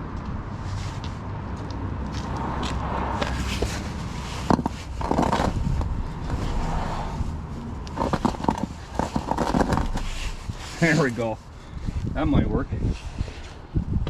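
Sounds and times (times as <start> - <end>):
low background rumble: 2.7 - 14.0
hand tools clinking and scraping: 7.8 - 11.5.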